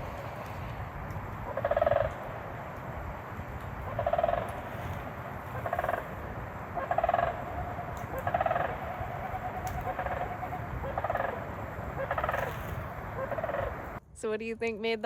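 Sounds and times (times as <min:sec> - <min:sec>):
animal call with rattling pulsed notes: 0:03.9 - 0:04.6, 0:06.8 - 0:14.0.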